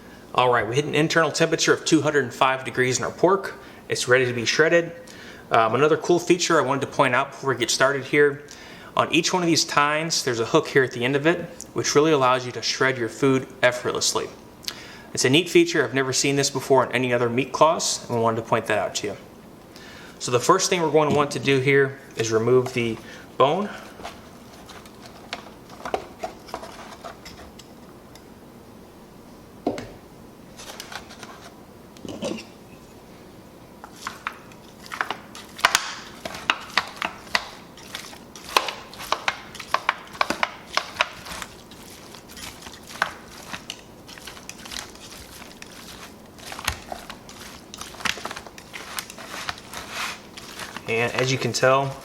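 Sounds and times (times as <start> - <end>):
meat claws clicking and scraping: 23.8 - 27.8, 33.8 - 52.0.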